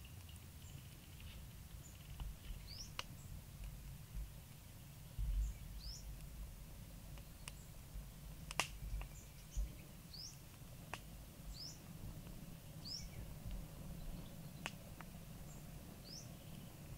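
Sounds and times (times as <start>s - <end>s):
bird chirping: 0.0s - 3.4s, 4.2s - 6.2s, 7.0s - 7.8s, 8.7s - 10.5s, 11.4s - 11.9s, 12.6s - 16.9s.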